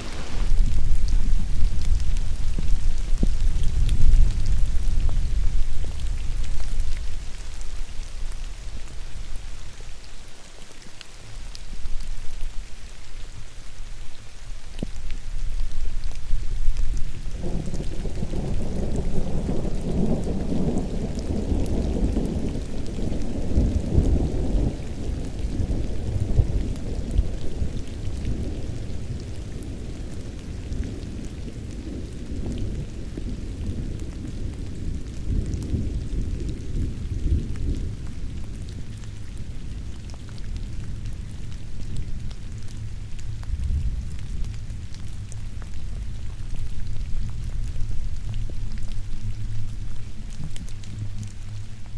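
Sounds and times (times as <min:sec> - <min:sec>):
low roll of thunder: 0:00.0 - 0:09.5, 0:15.5 - 0:51.9
steady rain: 0:00.0 - 0:51.9
single raindrops ticking: 0:35.2 - 0:51.9.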